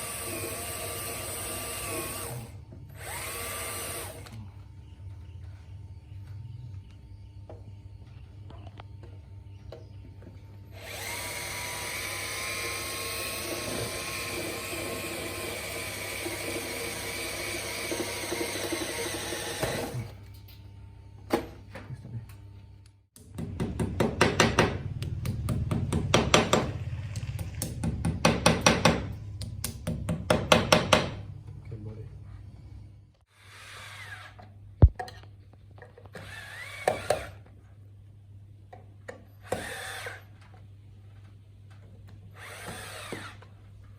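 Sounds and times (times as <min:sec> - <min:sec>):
power drill whining: 0:00.0 - 0:04.4, 0:10.8 - 0:20.2, 0:36.1 - 0:37.4, 0:39.4 - 0:40.4, 0:42.3 - 0:43.5.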